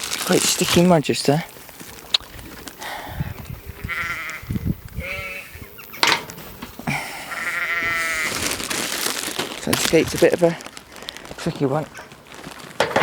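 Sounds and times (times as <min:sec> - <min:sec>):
sheep bleating: 0:03.8 - 0:05.7, 0:07.2 - 0:08.4.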